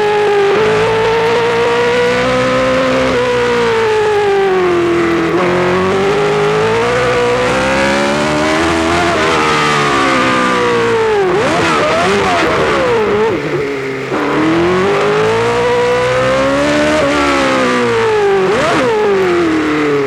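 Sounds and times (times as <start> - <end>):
racing car engine running hard: 0.0 - 20.0.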